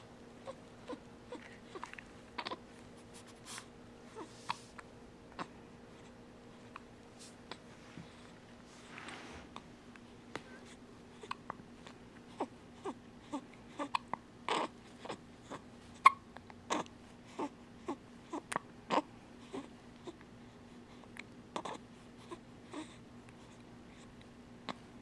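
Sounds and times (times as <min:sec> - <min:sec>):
baby whimpering: 0:00.4 - 0:02.6, 0:03.5 - 0:04.6, 0:12.3 - 0:20.2, 0:21.6 - 0:23.0
baby hiccuping: 0:16.0 - 0:16.9.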